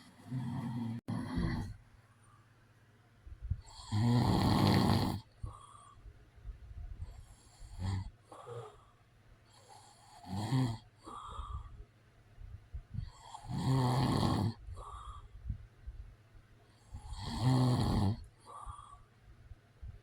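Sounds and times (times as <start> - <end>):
man snoring: 0.0 - 1.8, 3.6 - 5.6, 7.4 - 8.9, 9.6 - 11.7, 13.1 - 15.2, 16.9 - 18.9.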